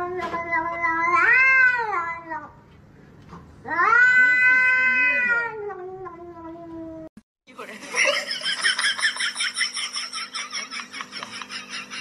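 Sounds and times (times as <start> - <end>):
cat meowing: 0.0 - 2.5, 3.7 - 7.1.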